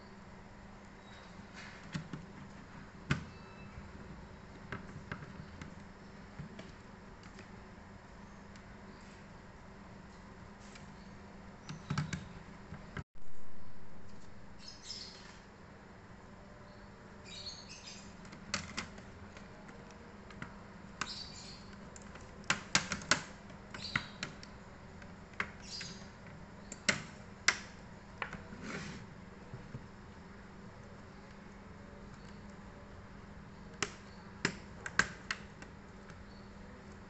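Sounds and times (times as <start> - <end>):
laptop parts clicking: 18.2 - 28.5, 33.7 - 36.2.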